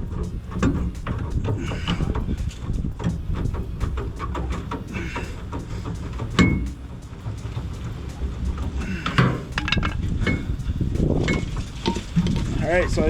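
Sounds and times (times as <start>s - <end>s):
metal tools clanking: 0.1s - 13.0s
ringing metal knock: 6.4s - 6.8s, 9.1s - 10.6s, 11.2s - 12.5s.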